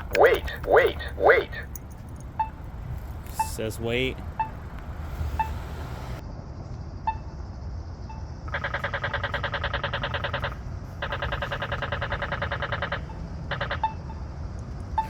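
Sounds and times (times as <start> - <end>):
pedestrian push button rapid ticking: 0.0 - 5.6, 8.6 - 15.0
low traffic rumble: 0.0 - 15.0.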